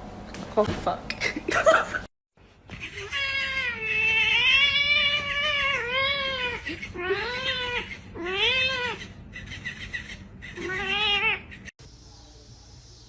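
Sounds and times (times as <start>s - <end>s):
cat yowling and meowing: 2.7s - 11.7s.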